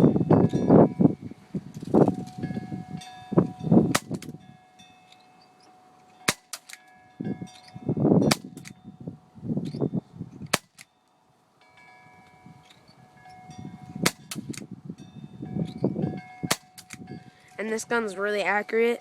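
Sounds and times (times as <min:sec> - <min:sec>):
airsoft pistol shots: 0:03.9 - 0:04.3, 0:06.3 - 0:06.8, 0:10.5 - 0:10.8, 0:14.1 - 0:14.7, 0:16.5 - 0:17.0.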